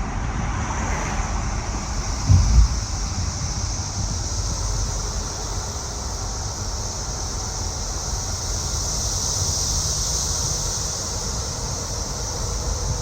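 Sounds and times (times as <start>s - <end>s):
cicadas chorus: 0.0s - 13.0s
car rumble: 0.1s - 5.3s.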